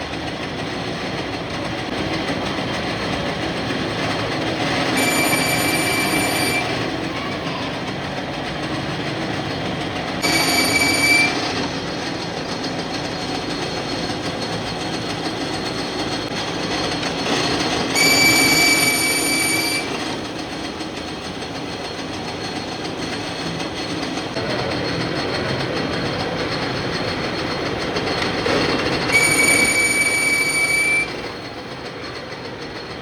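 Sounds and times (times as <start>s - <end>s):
metalworking machine running: 0.0s - 33.0s
high-pitched metal squeal: 10.2s - 11.7s, 17.8s - 20.1s, 29.0s - 31.2s.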